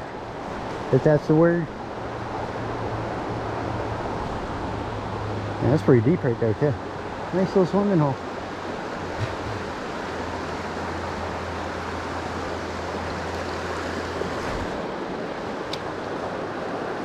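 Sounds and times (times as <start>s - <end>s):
water rushing over rocks: 6.8s - 17.0s.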